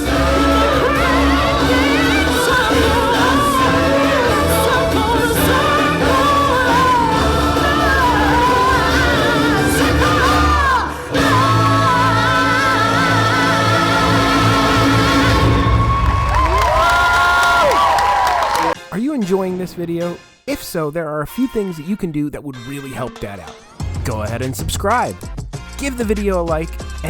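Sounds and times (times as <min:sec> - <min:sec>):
stage-show music with singers: 0:00.0 - 0:19.0.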